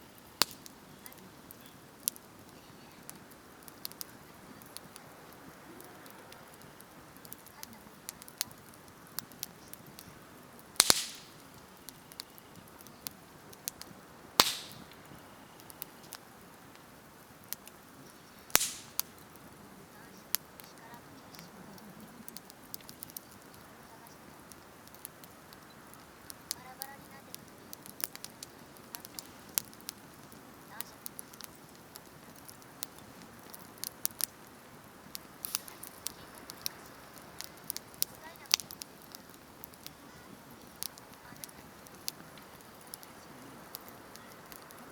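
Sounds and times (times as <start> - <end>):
wood fire crackling: 0.0 - 44.9
loud sharp pops: 0.4 - 1.2, 10.8 - 16.8, 17.5 - 19.5, 35.1 - 44.9.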